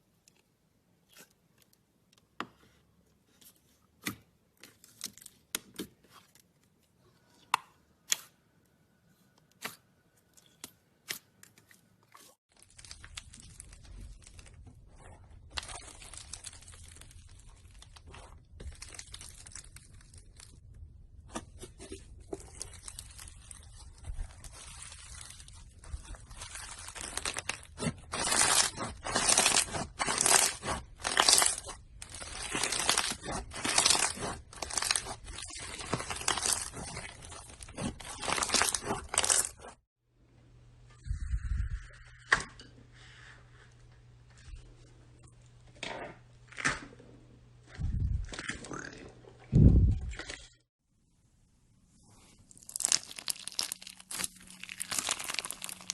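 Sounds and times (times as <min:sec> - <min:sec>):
slime crackling and crunching: 0:12.5 - 0:20.7, 0:21.7 - 0:39.8, 0:52.4 - 0:55.9
slime squishing and popping: 0:24.2 - 0:39.7, 0:52.5 - 0:55.9.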